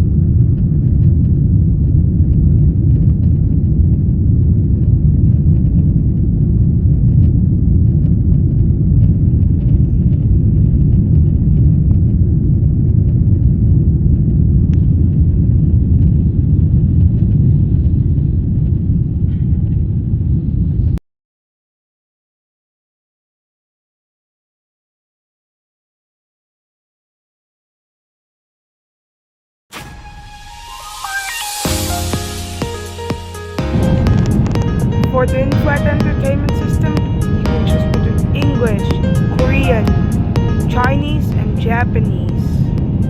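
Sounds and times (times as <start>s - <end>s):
jet engine low rumble: 0.0s - 21.0s, 30.2s - 43.0s.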